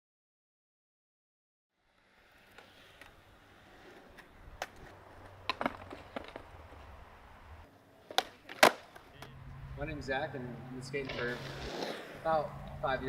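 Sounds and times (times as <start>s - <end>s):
skateboard rolling rumble: 1.8s - 13.0s
skateboard clacks: 2.5s - 6.9s, 8.1s - 9.3s.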